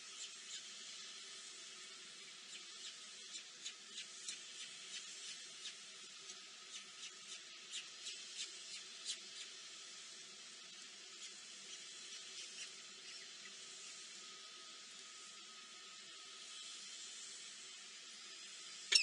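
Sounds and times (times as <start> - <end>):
steady hiss: 0.0 - 19.0.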